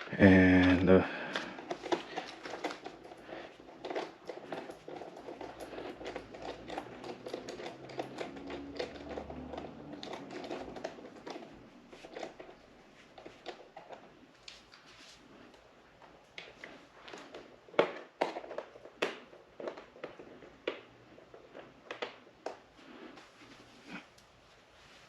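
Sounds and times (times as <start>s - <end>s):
clicks and rattles of tools: 0.6s - 12.5s.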